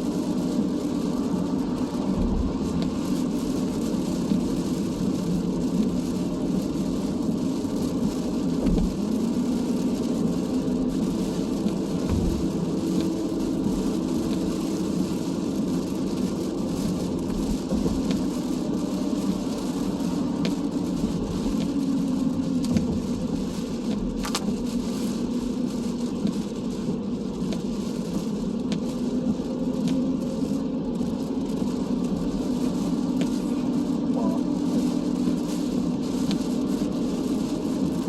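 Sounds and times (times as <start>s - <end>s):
car road noise on wet road: 0.0s - 38.0s.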